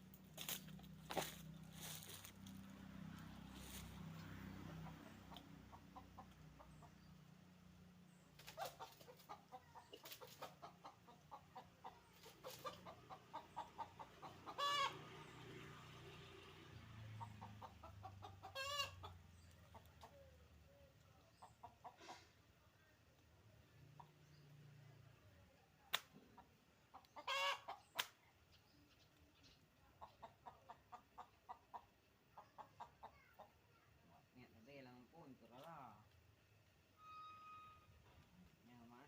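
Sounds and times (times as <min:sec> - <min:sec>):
faint chicken clucking: 0:00.0 - 0:39.0
chicken squawking: 0:12.2 - 0:15.0, 0:17.6 - 0:19.1, 0:27.2 - 0:28.1.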